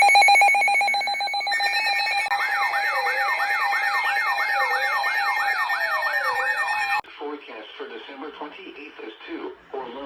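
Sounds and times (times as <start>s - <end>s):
fast siren-like wail: 0.0s - 7.0s.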